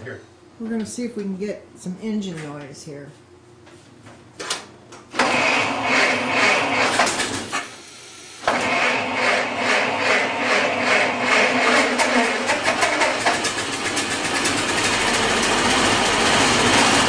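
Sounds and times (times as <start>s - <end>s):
car engine starting and running: 5.2s - 7.7s, 8.4s - 17.0s.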